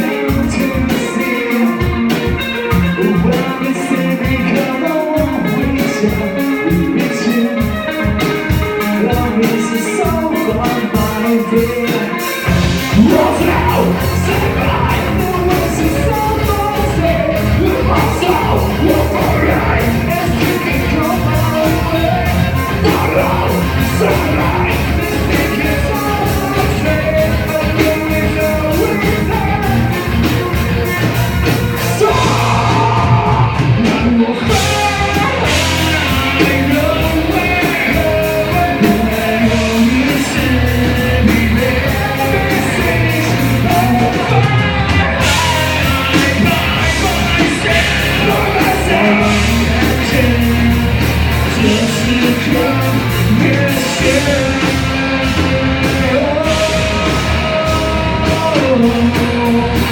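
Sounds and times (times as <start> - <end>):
live band playing: 0.0 - 59.9.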